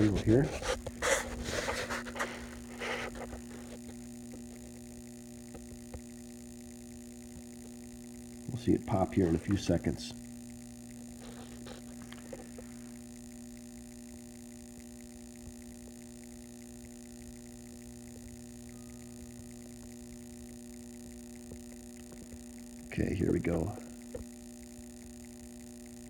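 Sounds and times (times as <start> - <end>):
electrical hum: 0.0 - 26.0.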